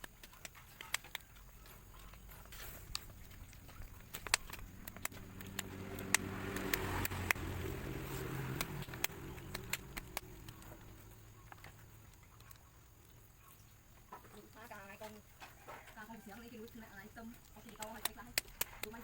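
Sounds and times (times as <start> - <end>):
sharp clicks: 0.0 - 13.2, 16.4 - 19.0
vehicle engine passing by: 2.3 - 12.0.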